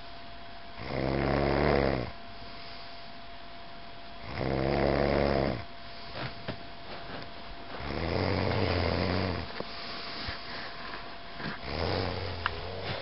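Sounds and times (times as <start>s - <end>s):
faint steady hum: 0.0s - 13.0s
person snoring: 0.8s - 2.1s, 4.2s - 5.6s, 7.8s - 9.5s, 11.4s - 13.0s.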